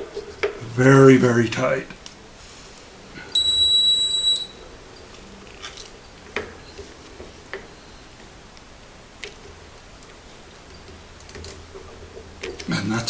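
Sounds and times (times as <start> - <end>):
high-pitched electronic beep: 3.4 - 4.6.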